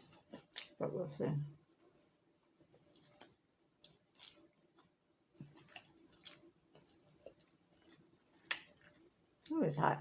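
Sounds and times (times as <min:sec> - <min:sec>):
faint chewing: 0:00.0 - 0:00.8, 0:01.8 - 0:09.6
mouth clicks and smacks: 0:02.7 - 0:09.5.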